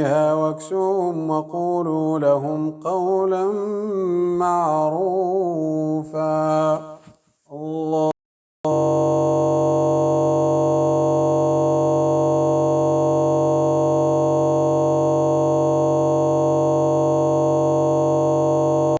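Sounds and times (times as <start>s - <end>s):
sustained synthesizer chord: 8.7s - 18.9s.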